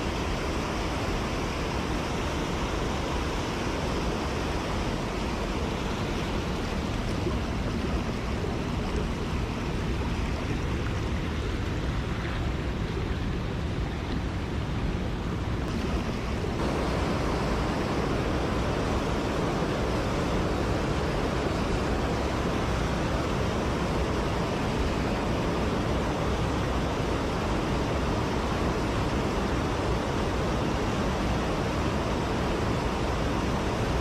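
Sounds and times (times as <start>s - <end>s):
mountain stream water rushing: 0.0s - 34.0s.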